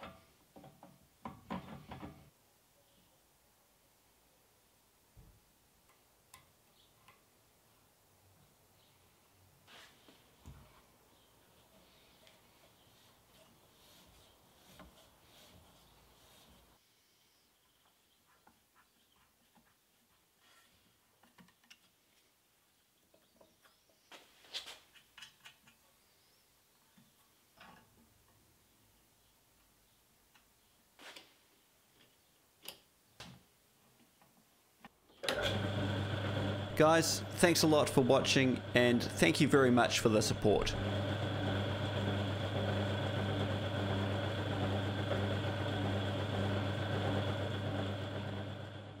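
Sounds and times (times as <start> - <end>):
lathe running: 35.3 - 49.0.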